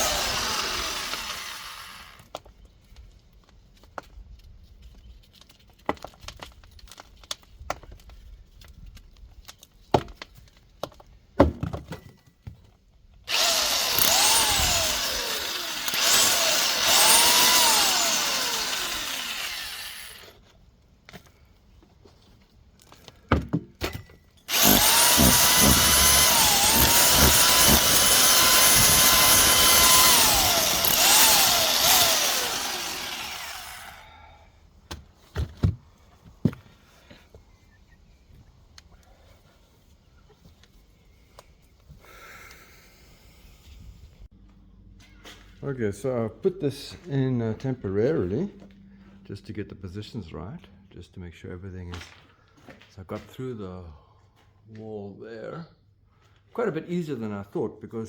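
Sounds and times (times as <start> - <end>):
hammer drill breaking brick: 13.3 - 20.2, 24.5 - 33.9.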